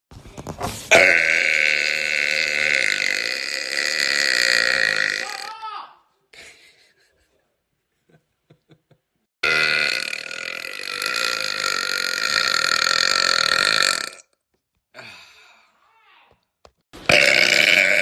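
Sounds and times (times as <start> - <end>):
man burping: 0.9 - 5.6, 9.4 - 14.3, 17.1 - 18.0.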